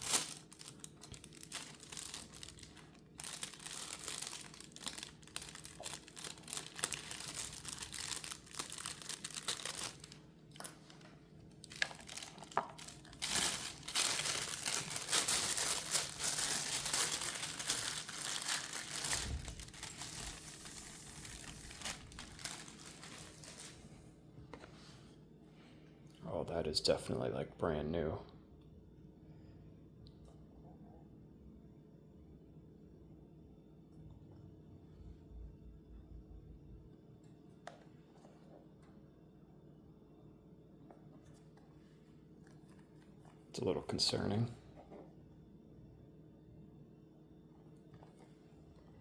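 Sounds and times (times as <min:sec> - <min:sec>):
plastic wrap crinkling: 0:00.0 - 0:23.9.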